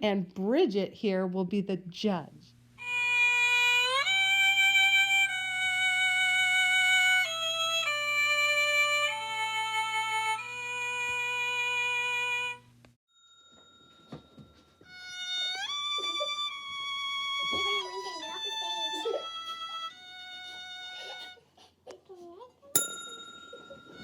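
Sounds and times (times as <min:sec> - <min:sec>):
violin playing held notes: 0:02.8 - 0:12.7, 0:14.9 - 0:21.4.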